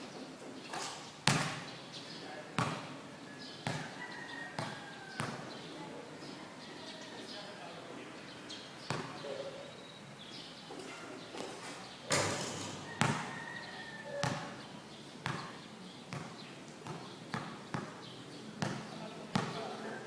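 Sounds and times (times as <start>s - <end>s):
basketball bouncing on court: 1.2s - 1.7s, 2.6s - 2.9s, 3.6s - 3.9s, 4.6s - 5.5s, 8.9s - 9.1s, 12.1s - 13.4s, 14.1s - 14.6s, 15.2s - 18.0s, 18.6s - 19.6s.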